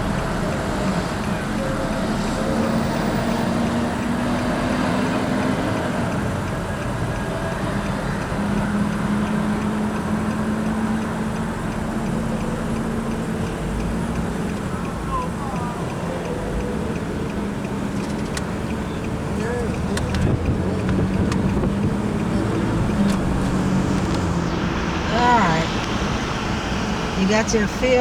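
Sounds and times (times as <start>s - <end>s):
car engine and tyre rumble: 0.0s - 28.0s.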